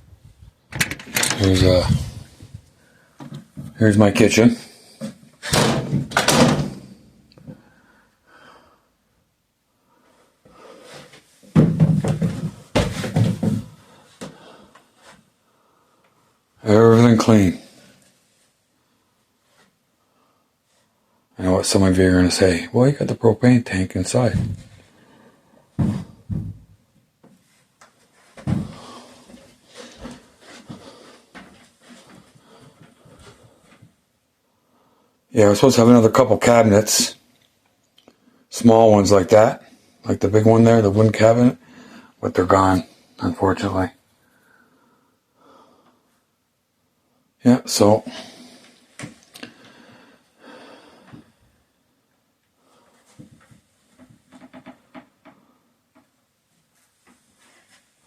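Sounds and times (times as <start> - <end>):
knocks and rustling of handling: 0.0 - 3.8, 11.0 - 15.3, 25.7 - 34.0, 52.9 - 58.0
doors opening and shutting: 0.7 - 2.4, 5.4 - 7.0.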